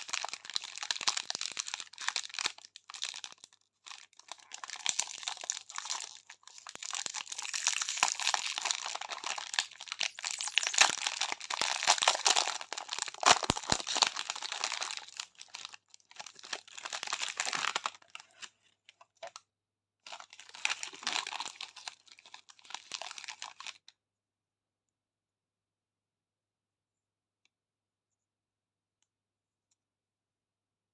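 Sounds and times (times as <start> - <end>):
plastic wrappers crinkling: 0.0 - 18.5, 20.1 - 23.8.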